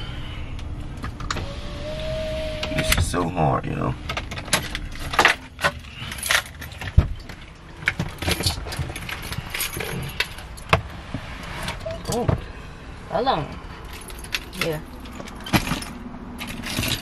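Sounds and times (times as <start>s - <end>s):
handcuff chain jangling: 8.2s - 10.7s, 13.8s - 17.0s.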